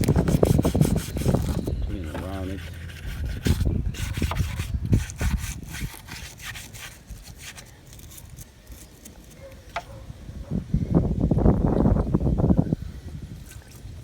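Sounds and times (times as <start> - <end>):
brush scrubbing: 0.0 - 9.4.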